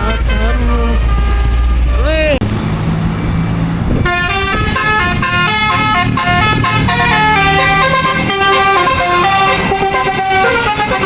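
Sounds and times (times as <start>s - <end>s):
bus musical horn playing tune: 0.0s - 2.4s, 3.9s - 11.0s
bus engine running: 0.0s - 11.0s.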